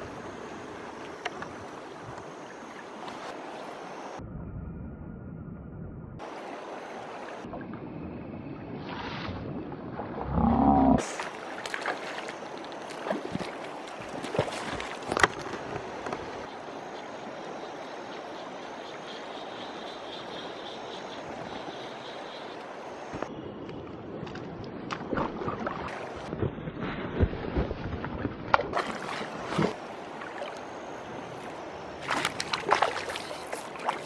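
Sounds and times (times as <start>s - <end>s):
stream water rushing: 11.0s - 17.4s, 28.7s - 34.0s.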